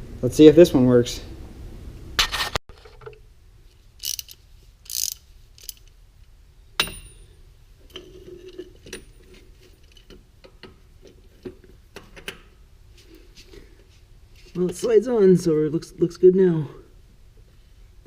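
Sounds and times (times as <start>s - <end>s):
sharp metallic clank: 6.8s - 7.4s.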